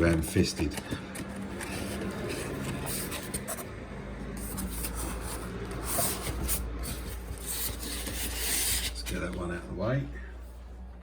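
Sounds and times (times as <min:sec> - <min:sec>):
paper and cardboard rustling: 0:00.0 - 0:03.7, 0:04.4 - 0:09.4.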